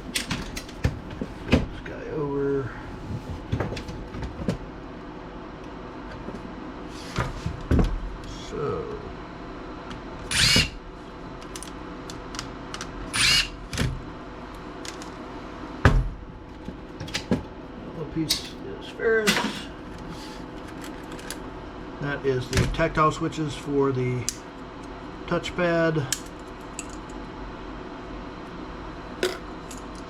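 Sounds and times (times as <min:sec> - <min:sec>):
power screwdriver whirring: 0:10.3 - 0:10.7, 0:13.2 - 0:13.5.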